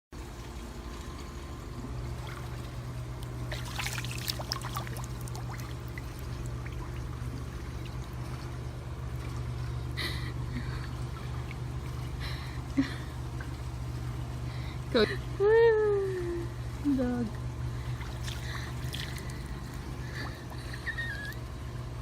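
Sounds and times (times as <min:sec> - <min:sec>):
steady low hum: 0:00.2 - 0:22.0
water splashing in pool: 0:01.9 - 0:09.8, 0:17.8 - 0:21.4.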